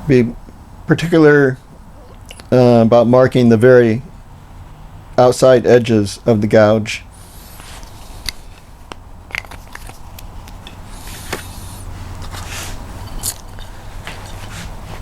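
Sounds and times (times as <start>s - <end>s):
low steady hum: 0.0s - 15.0s
tool handling clicks: 7.8s - 14.4s.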